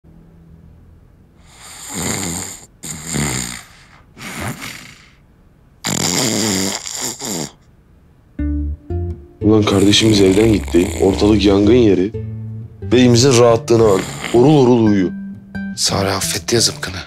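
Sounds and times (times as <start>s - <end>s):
man snoring loudly: 1.4s - 5.2s, 5.8s - 7.6s, 9.6s - 11.7s, 13.6s - 14.8s.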